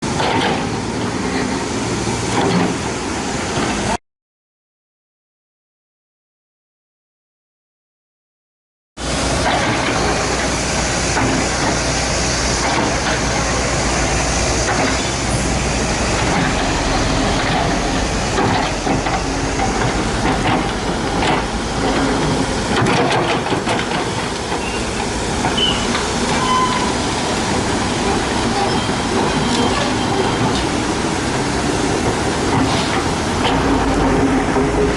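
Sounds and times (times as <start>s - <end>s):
excavator diesel engine running: 0.1s - 4.0s, 9.0s - 34.9s.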